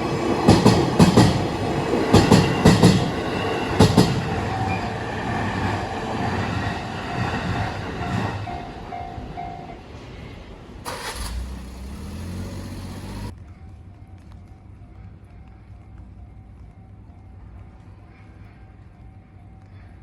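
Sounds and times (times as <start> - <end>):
train running noise: 0.0 - 13.3
train wheels clacking over rail joint: 0.5 - 1.4, 2.1 - 4.3.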